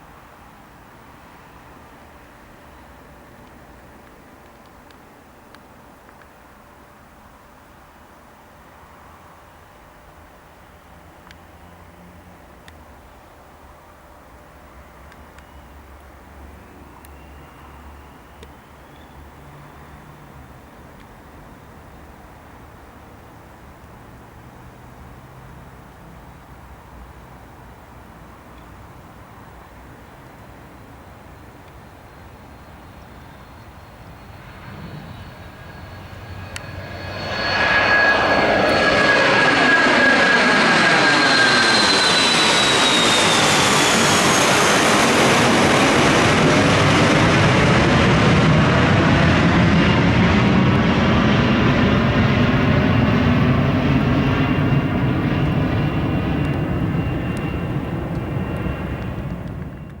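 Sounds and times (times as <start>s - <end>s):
jet engines at takeoff: 0.0s - 60.0s.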